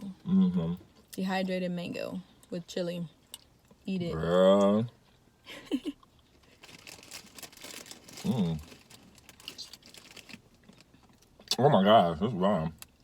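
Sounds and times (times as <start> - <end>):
person saying mm: 0.0 - 0.8, 8.2 - 8.6
snack packaging crinkling: 6.4 - 11.3.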